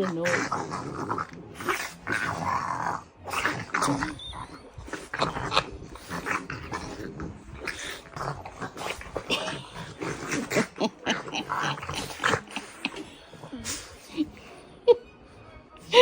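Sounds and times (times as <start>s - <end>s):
dogs grunting and growling: 0.0s - 15.0s.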